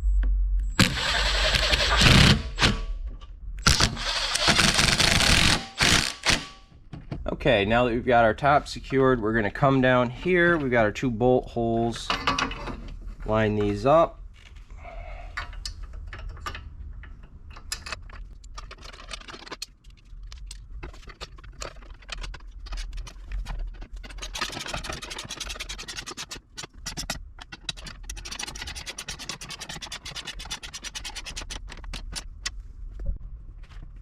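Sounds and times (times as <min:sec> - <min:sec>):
socket ratchet clicking: 0:03.7 - 0:06.5
metal hardware knocks and scrapes: 0:11.9 - 0:13.8.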